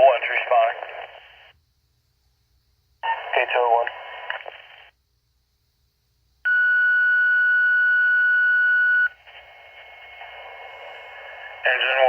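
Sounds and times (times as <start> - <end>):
radio channel hiss: 0.0 - 1.6, 3.0 - 5.0, 9.1 - 12.0.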